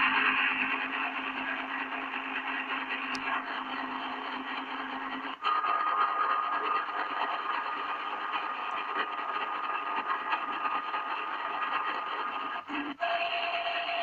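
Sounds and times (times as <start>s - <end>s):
rasping radio static: 0.0s - 14.0s
thin steady whistle: 12.3s - 14.0s.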